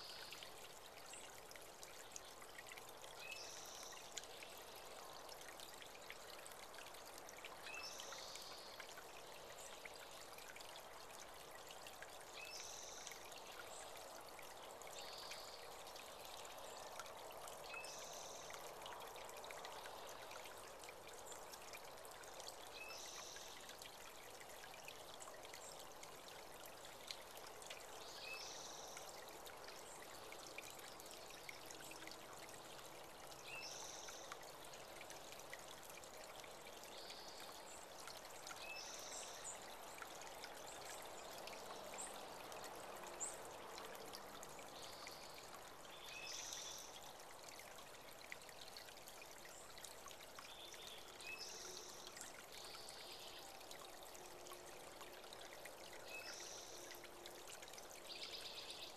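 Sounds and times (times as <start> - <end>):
creek trickling: 0.0 - 58.9.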